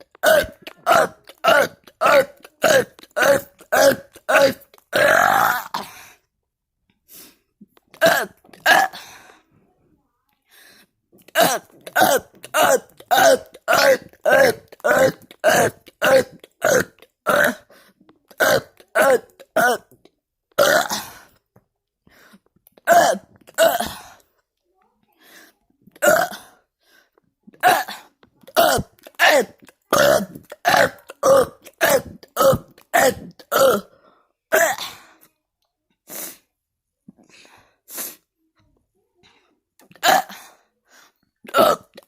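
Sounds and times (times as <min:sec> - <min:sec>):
man burping: 0:00.0 - 0:05.9, 0:07.9 - 0:09.0, 0:11.3 - 0:17.7, 0:18.3 - 0:20.0, 0:20.6 - 0:21.2, 0:22.8 - 0:24.1, 0:26.0 - 0:26.5, 0:27.6 - 0:33.9, 0:39.8 - 0:40.5, 0:41.4 - 0:42.0.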